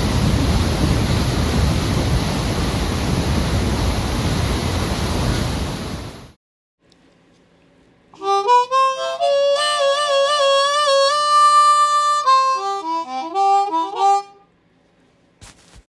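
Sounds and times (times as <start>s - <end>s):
harmonica playing tune: 8.2s - 14.5s.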